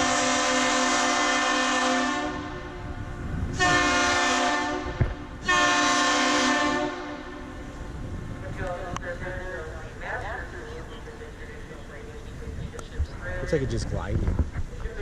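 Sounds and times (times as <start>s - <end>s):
deep horn blasts: 0.0s - 7.5s.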